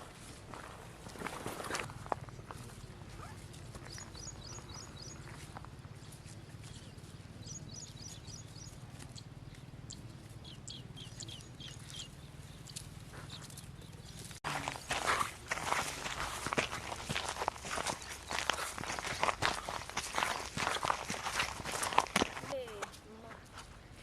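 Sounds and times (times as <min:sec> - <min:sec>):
small bird chirping: 0:03.1 - 0:14.4.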